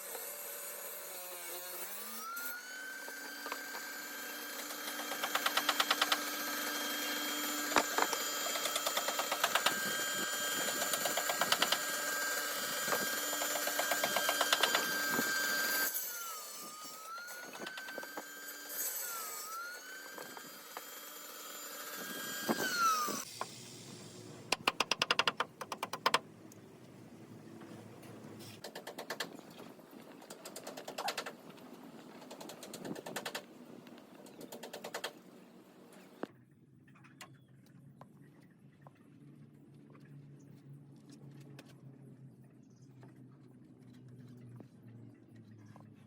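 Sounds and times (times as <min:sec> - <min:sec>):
electric power tool cutting wood: 0:00.0 - 0:23.4.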